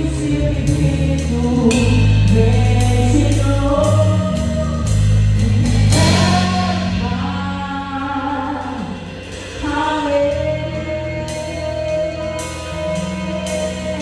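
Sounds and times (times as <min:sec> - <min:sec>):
live gospel band playing: 0:00.0 - 0:14.0
drum hits: 0:01.7 - 0:07.6.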